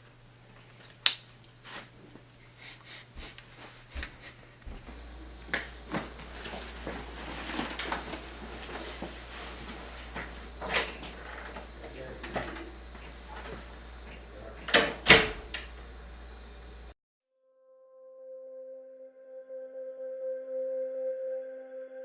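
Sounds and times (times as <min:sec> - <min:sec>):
low electrical hum: 0:00.0 - 0:17.0
handling clicks and rustles: 0:04.9 - 0:14.9.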